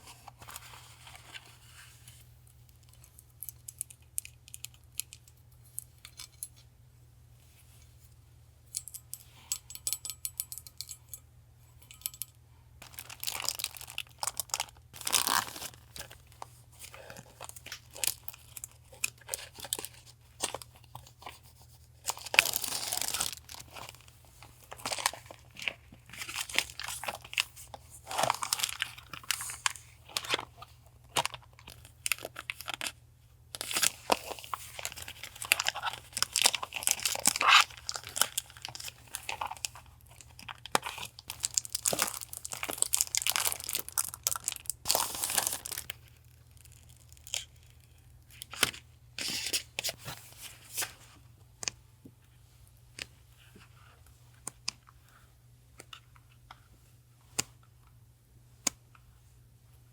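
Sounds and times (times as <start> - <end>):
packaging tearing and crinkling: 12.8 - 16.2, 22.0 - 24.0, 24.6 - 30.5, 33.6 - 47.6.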